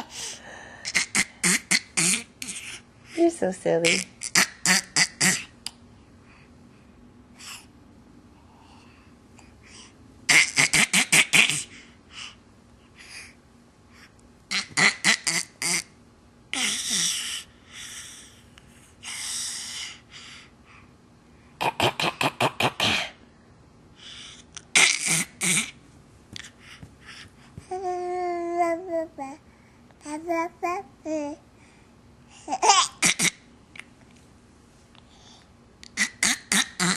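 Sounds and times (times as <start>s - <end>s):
child clearing throat: 21.6s - 23.2s, 32.8s - 33.4s.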